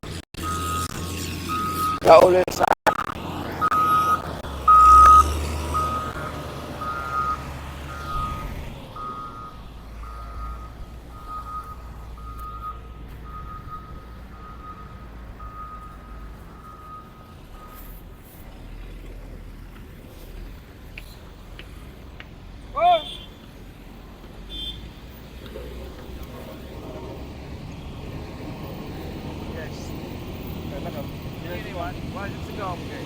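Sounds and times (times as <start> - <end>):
reversing alarm beeping: 0.4 - 2.3, 3.0 - 18.0.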